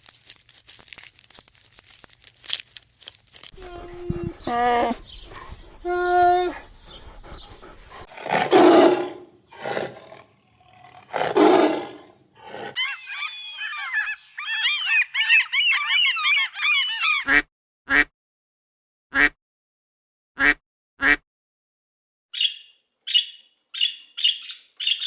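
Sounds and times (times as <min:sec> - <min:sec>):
rough noisy animal calls: 0:12.7 - 0:17.3
chorus of high chirping calls: 0:12.8 - 0:17.3
short sharp animal calls: 0:12.8 - 0:17.4.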